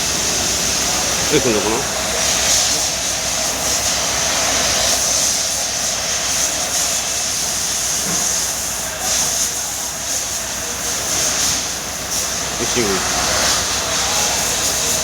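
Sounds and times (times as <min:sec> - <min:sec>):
diesel engine misfiring: 0:00.0 - 0:05.1.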